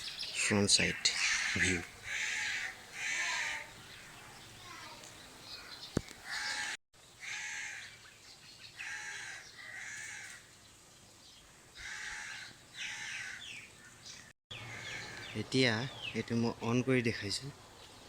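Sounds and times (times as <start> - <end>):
bird calling: 0.0 - 8.2, 11.8 - 16.2.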